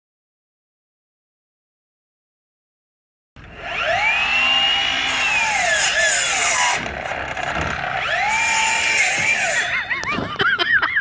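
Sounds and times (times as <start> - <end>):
miter saw whine: 3.4 - 11.0.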